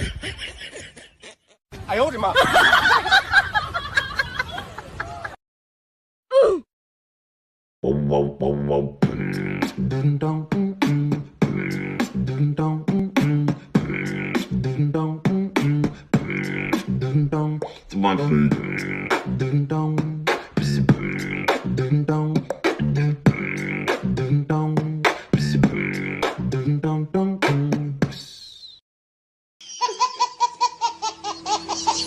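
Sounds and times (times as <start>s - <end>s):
bass line: 7.8s - 28.0s
beatbox beat: 7.8s - 28.5s.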